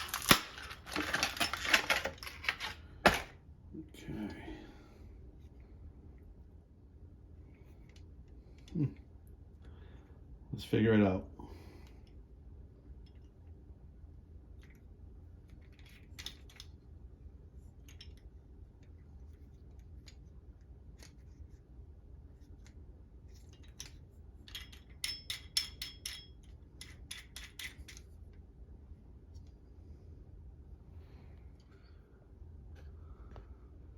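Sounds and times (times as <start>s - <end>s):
plastic parts clicking: 0.0s - 3.3s
low steady hum: 0.0s - 33.9s.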